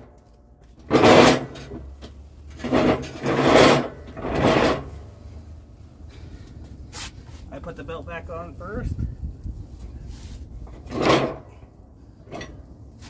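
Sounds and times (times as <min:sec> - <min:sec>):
mower deck scraping: 0:00.0 - 0:05.4, 0:09.8 - 0:13.0.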